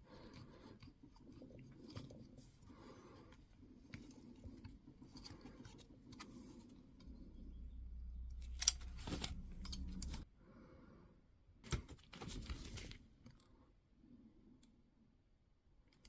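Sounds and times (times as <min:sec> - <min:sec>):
scratchy rustling of small parts: 0:00.0 - 0:07.5
low hum: 0:06.9 - 0:10.3.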